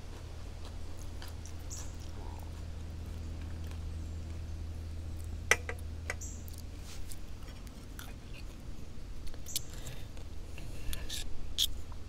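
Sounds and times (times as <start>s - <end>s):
chewing: 0.0s - 4.5s, 6.4s - 8.6s, 9.2s - 11.8s
low steady hum: 0.0s - 12.0s.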